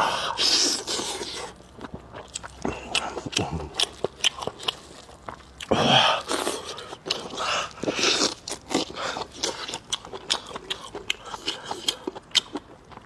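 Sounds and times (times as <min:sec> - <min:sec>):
person chewing with mouth clicks: 0:00.0 - 0:13.0.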